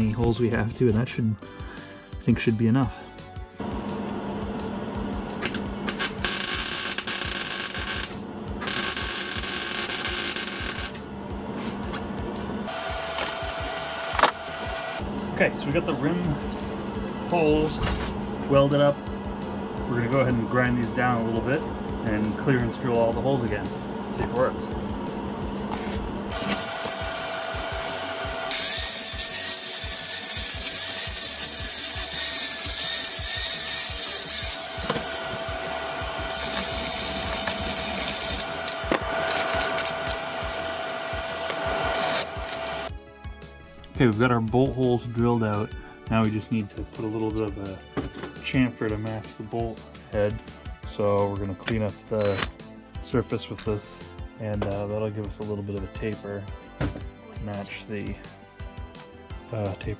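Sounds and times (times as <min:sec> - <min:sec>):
power tool whining: 0:05.4 - 0:11.0, 0:26.3 - 0:42.9
welding arc crackling: 0:05.4 - 0:11.1, 0:28.4 - 0:42.9
tool cutting steel with hiss: 0:05.9 - 0:11.0, 0:28.5 - 0:35.4, 0:36.3 - 0:40.2, 0:41.8 - 0:42.8.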